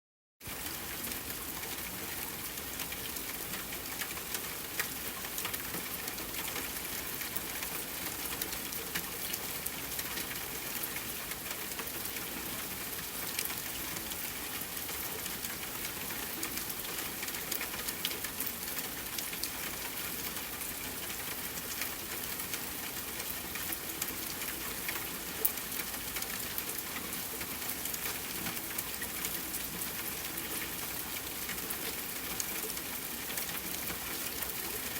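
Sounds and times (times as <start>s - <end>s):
soft rain: 0.4s - 34.9s.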